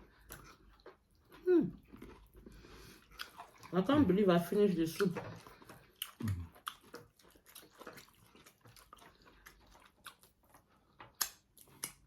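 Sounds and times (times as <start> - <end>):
faint chewing: 0.0 - 12.0
wet mouth clicks and smacks: 11.1 - 12.0.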